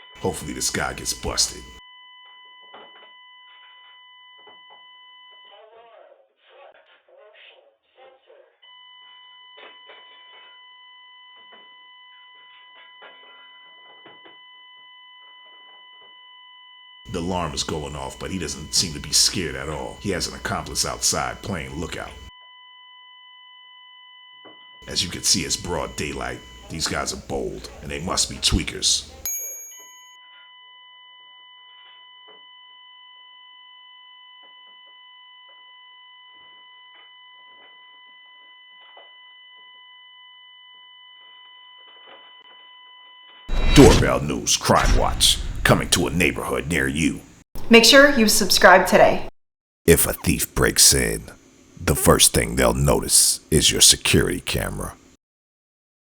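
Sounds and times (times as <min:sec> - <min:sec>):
burglar alarm high-pitched tone: 0:00.0 - 0:01.8, 0:17.1 - 0:22.3, 0:24.8 - 0:30.0, 0:43.5 - 0:49.1, 0:49.9 - 0:54.9.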